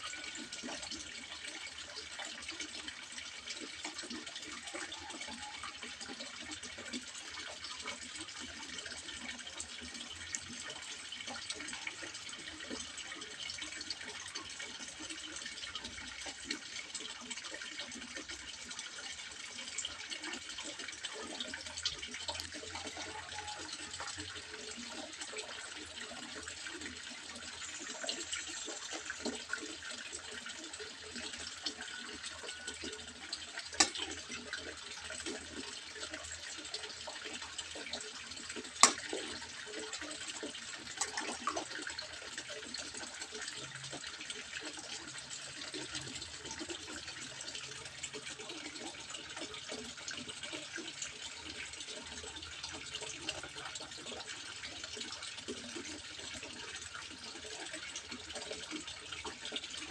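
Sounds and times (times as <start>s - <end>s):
water trickling into pond: 0.0s - 59.9s.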